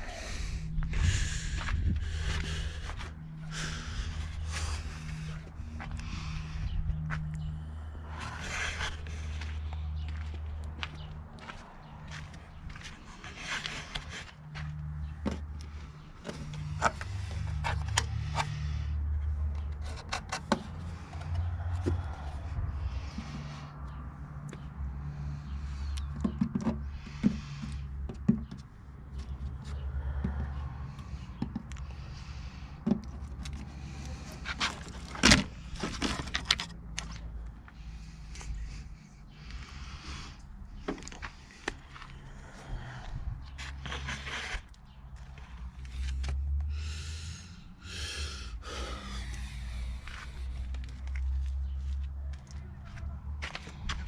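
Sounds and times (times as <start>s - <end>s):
knocks clicks and scraping: 13.1s - 22.4s, 26.0s - 32.0s, 32.8s - 38.5s.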